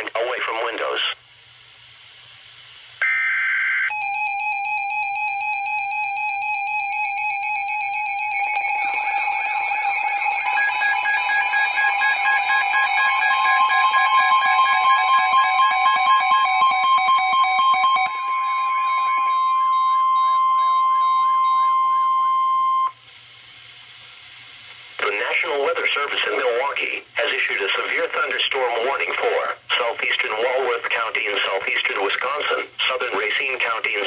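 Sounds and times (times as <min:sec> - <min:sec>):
steady warning tone: 0:03.0 - 0:23.0
warbling siren-like alarm: 0:03.0 - 0:23.0
steady electronic beeping tones: 0:03.9 - 0:23.0
digital header data burst: 0:08.2 - 0:21.3.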